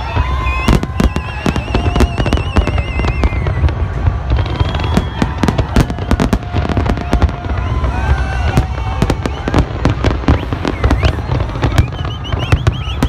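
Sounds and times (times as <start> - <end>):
fireworks bangs and crackles: 0.0 - 13.0
high wavering whistle: 10.2 - 13.0.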